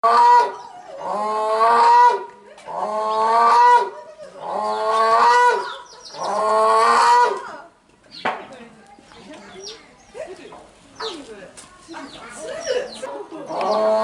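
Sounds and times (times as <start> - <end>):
crane calling: 4.6 - 7.4.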